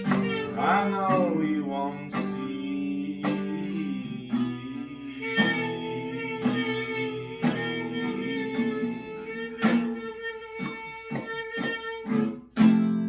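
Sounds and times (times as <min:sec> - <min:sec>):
strummed acoustic guitar: 0:00.0 - 0:13.0.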